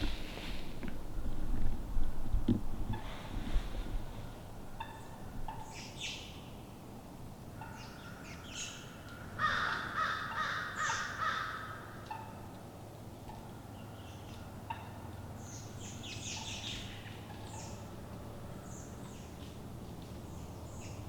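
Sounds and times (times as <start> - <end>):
quiet woodland background: 0.0 - 21.0
crows cawing: 7.6 - 12.1.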